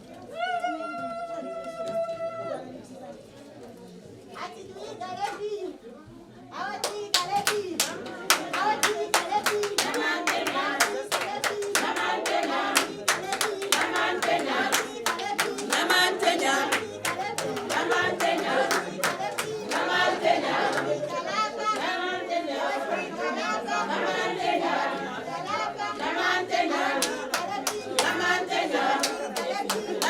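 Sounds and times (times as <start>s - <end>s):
group of people singing: 6.6s - 30.0s
hand clapping: 6.8s - 19.9s, 27.0s - 30.0s.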